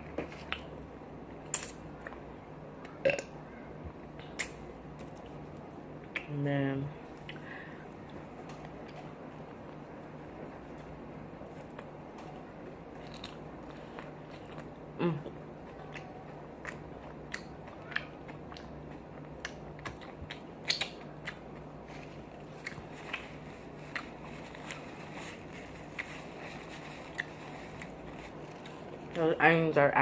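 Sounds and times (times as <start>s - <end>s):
steady low hum: 0.0s - 30.0s
wet mouth clicks: 1.5s - 2.2s, 4.2s - 4.6s, 19.4s - 21.4s
mouth chewing and lip smacking: 4.2s - 6.4s, 7.1s - 9.1s, 11.5s - 26.4s, 27.0s - 29.2s.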